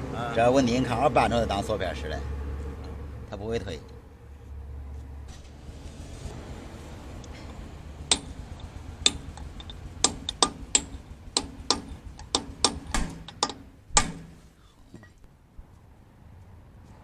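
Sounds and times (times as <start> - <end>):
hammer tapping on steel: 8.1 - 8.4, 9.0 - 14.4.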